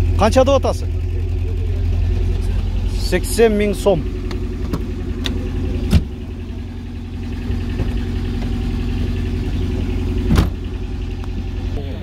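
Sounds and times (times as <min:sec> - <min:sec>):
car engine idling: 0:00.0 - 0:12.0
sharp thump: 0:05.9 - 0:06.2, 0:10.2 - 0:10.7.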